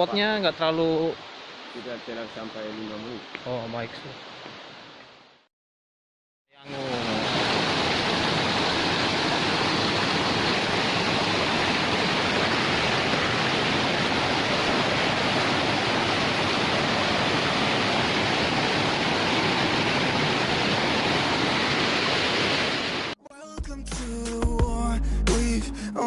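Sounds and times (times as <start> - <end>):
waterfall roaring: 6.7 - 23.2.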